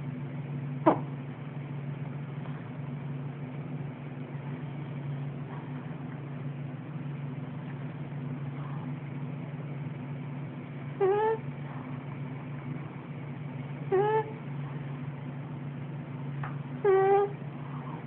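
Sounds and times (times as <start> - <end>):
cat purring: 7.6 - 15.2, 16.8 - 18.0.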